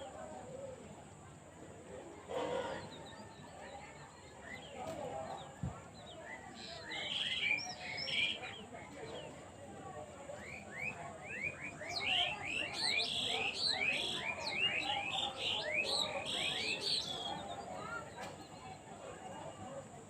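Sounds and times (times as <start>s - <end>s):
small birds chirping: 2.8s - 9.6s, 10.3s - 18.8s.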